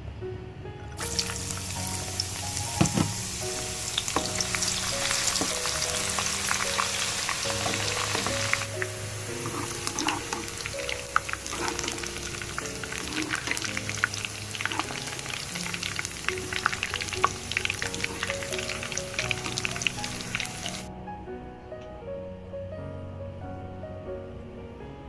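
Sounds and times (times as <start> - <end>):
background music: 0.0 - 25.0
food sizzling in hot oil: 1.0 - 20.9.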